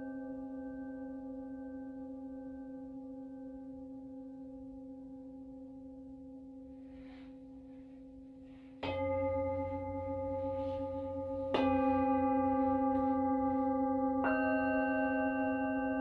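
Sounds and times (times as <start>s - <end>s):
singing bowl ringing hum: 0.0s - 16.0s
singing bowls struck: 8.8s - 16.0s.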